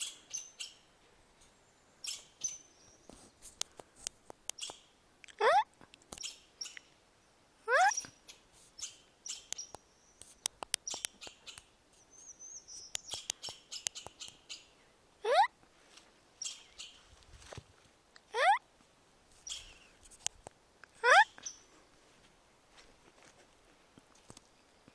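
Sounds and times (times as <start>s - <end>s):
chipmunk chips and squeaks: 2.0s - 2.6s, 4.4s - 4.9s, 5.5s - 6.9s, 7.7s - 11.7s, 12.4s - 14.6s, 16.4s - 17.0s, 19.4s - 20.3s
chipmunk downward-sliding calls: 7.7s - 15.5s, 21.0s - 21.6s.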